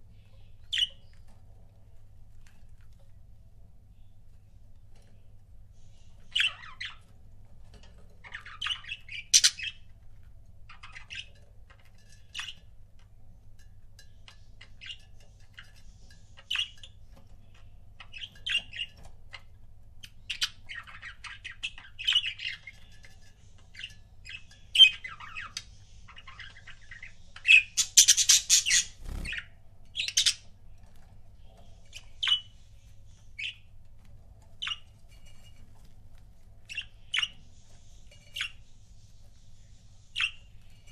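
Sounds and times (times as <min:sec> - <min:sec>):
budgerigars chirping and squawking: 0:05.8 - 0:07.1, 0:08.2 - 0:09.8, 0:10.7 - 0:11.4, 0:20.0 - 0:30.5, 0:31.4 - 0:33.7, 0:36.7 - 0:40.9.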